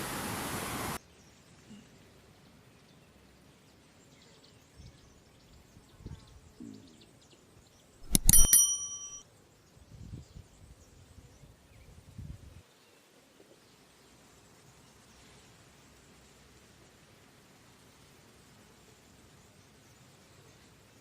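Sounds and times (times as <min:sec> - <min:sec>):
rain hiss: 0:00.0 - 0:01.0
metallic bell ring: 0:08.0 - 0:09.2.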